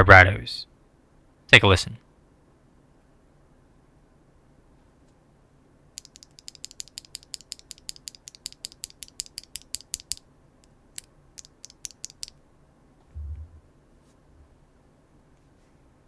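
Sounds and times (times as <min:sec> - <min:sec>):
mechanical keyboard typing: 0:06.0 - 0:10.2, 0:11.0 - 0:12.3.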